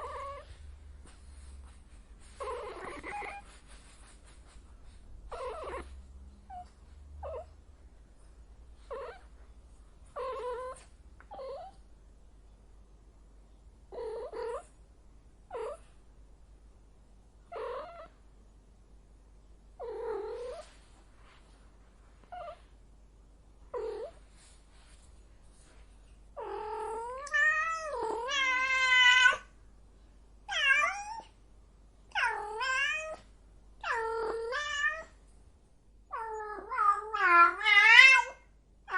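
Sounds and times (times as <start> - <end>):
cat meowing and yowling: 26.6 - 29.5, 30.5 - 31.3, 32.1 - 33.2, 33.8 - 35.1, 36.1 - 38.9.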